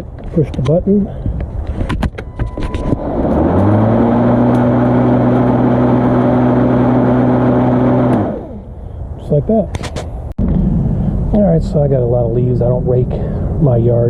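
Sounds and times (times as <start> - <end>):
electric lawn mower running: 2.7 - 8.7.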